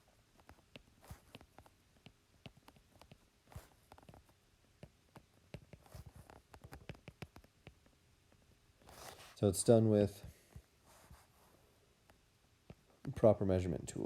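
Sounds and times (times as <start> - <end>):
pen tapping on a tablet: 0.4 - 8.4.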